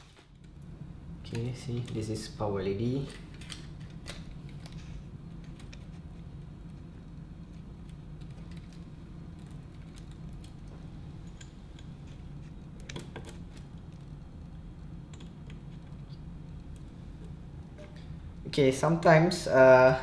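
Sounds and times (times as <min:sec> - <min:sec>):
low hum: 0:00.0 - 0:20.0.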